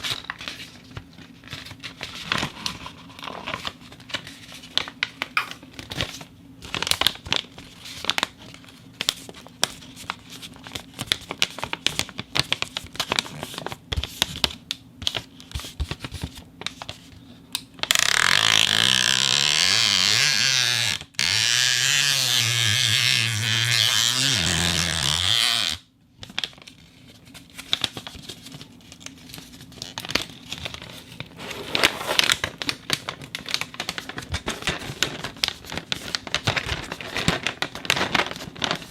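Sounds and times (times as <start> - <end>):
plastic packaging crinkling: 26.2 - 38.9.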